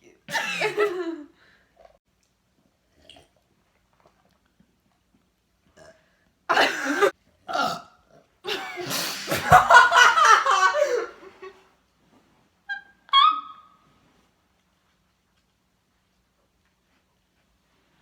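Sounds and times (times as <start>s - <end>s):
girls burping: 6.5s - 7.9s.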